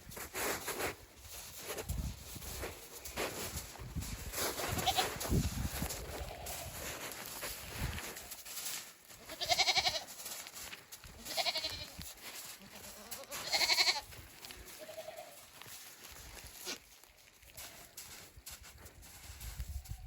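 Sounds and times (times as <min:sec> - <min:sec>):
goats bleating: 0:04.6 - 0:05.3, 0:06.1 - 0:06.9, 0:09.1 - 0:10.2, 0:11.0 - 0:15.6.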